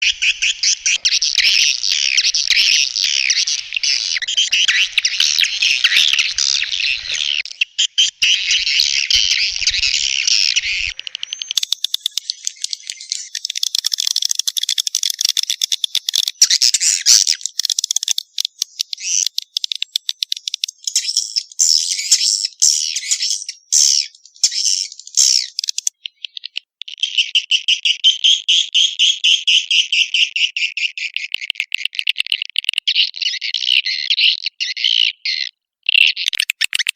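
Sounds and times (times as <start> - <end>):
swiftlets twittering: 0.0 - 16.4.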